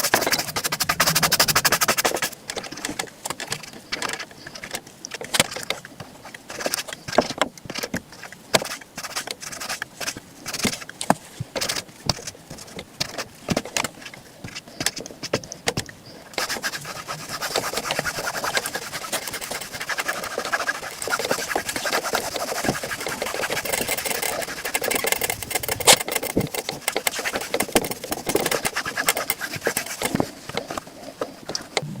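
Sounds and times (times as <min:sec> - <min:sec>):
fast brushing or buffing: 0:00.0 - 0:02.4, 0:16.3 - 0:31.8
brush strokes on leather boot: 0:16.4 - 0:31.1.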